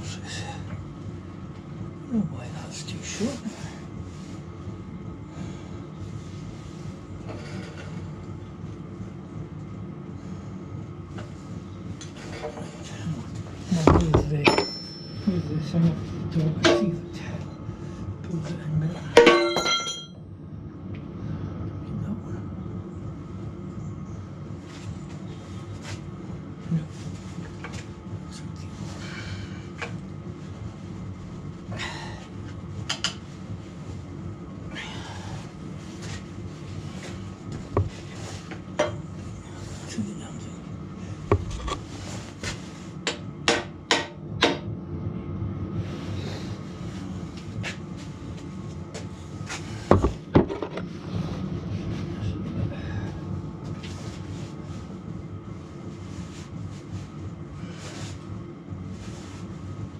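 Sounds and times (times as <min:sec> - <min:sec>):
heater humming: 0:00.0 - 0:59.9
knocks and scrapes of parts: 0:41.3 - 0:44.2, 0:49.9 - 0:50.9.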